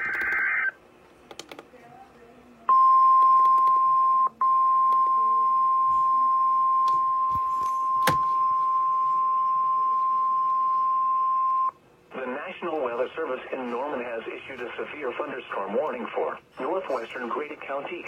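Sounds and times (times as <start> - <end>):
steady alarm tone: 3.8 - 11.7.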